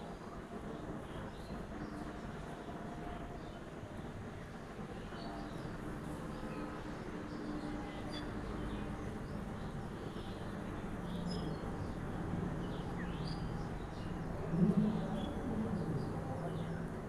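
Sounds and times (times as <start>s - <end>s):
steady low noise: 8.3s - 17.0s.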